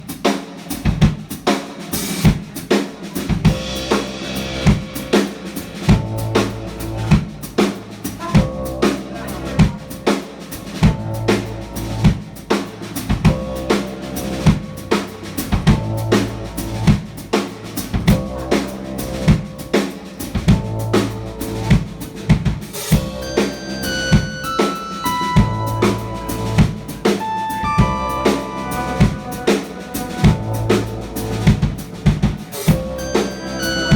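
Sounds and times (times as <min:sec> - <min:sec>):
drum kit beat: 0:00.0 - 0:33.9
bass line: 0:03.5 - 0:33.9
melodic line of held notes: 0:23.0 - 0:32.0, 0:32.7 - 0:33.9.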